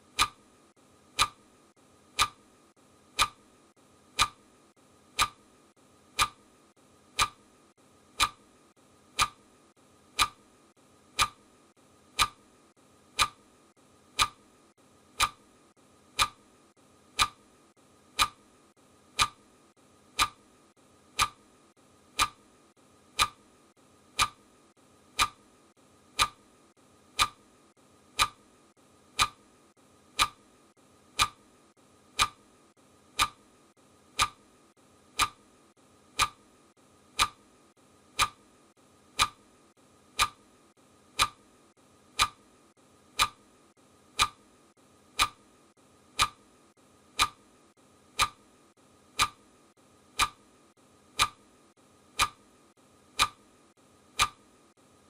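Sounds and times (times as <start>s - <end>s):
timer ticking: 0.0s - 7.5s, 8.1s - 8.5s, 9.1s - 15.5s, 16.1s - 21.5s, 22.1s - 34.5s, 35.1s - 35.5s, 36.1s - 36.5s, 37.1s - 37.5s, 38.1s - 38.5s, 39.1s - 40.5s, 41.1s - 45.5s, 46.1s - 46.5s, 47.1s - 47.5s, 48.1s - 48.5s, 49.1s - 49.5s, 50.1s - 50.5s, 51.1s - 51.5s, 52.2s - 52.4s, 53.1s - 53.4s, 54.1s - 54.4s.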